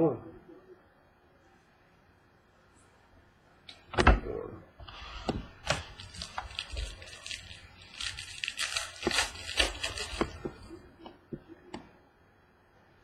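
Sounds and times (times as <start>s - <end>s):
packaging rustle: 5.6s - 10.7s.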